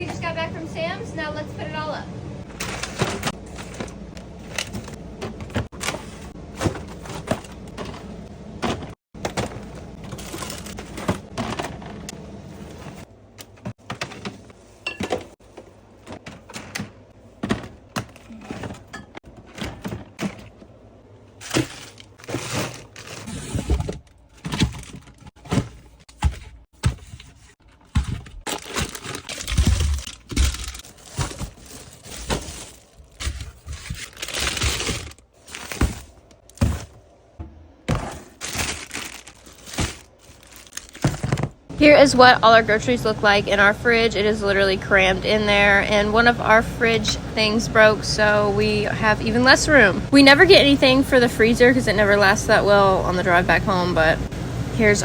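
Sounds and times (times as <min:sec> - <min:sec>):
plastic packaging rustling: 0:02.4 - 0:14.8, 0:15.4 - 0:37.1, 0:37.9 - 0:42.6
packages knocking on shelves: 0:04.6 - 0:12.1, 0:21.4 - 0:42.3.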